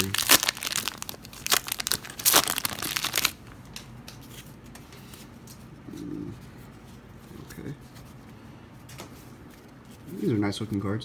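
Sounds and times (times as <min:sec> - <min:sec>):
plastic wrapper tearing and crinkling: 0:00.0 - 0:03.5.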